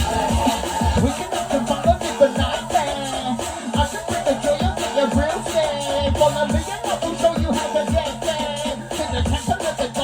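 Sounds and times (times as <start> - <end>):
drum and bass music: 0.0 - 10.0.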